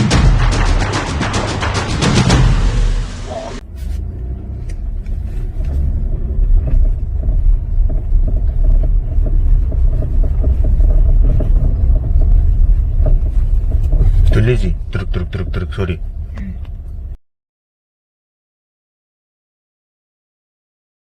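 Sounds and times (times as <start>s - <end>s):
intro music: 0.0s - 3.6s
pickup truck rumble: 0.0s - 17.2s
undercarriage rattling knocks: 5.8s - 14.5s.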